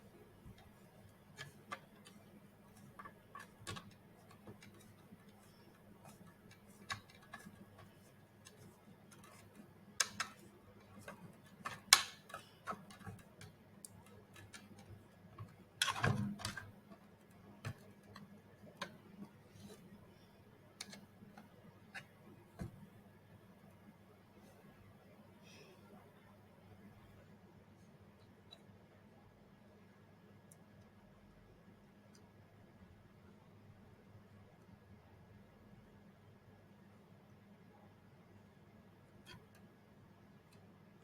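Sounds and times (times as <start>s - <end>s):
faint steady hum: 0.0s - 41.0s
clicks and taps of small parts: 0.5s - 19.3s.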